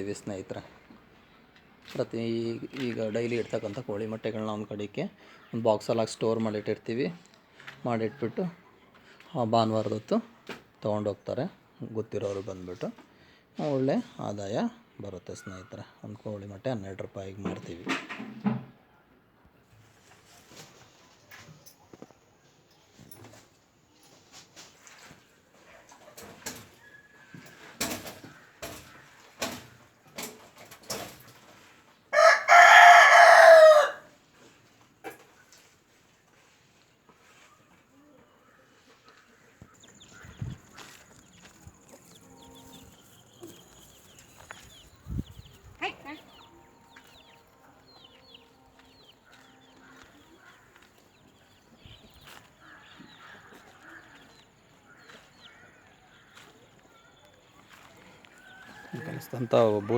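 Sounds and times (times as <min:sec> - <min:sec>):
rooster crowing: 0:32.1 - 0:34.1, 0:58.3 - 0:59.9
birds chirping faintly: 0:34.9 - 0:59.9.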